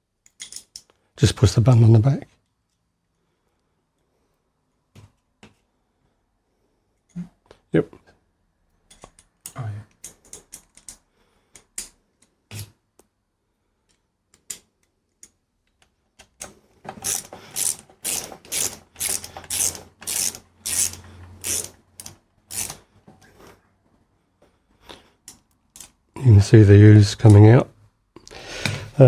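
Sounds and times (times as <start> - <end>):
socket ratchet clicking: 16.4 - 22.8.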